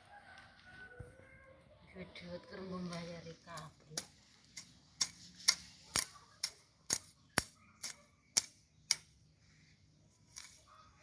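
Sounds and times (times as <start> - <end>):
blade snipping grass: 2.9 - 9.1.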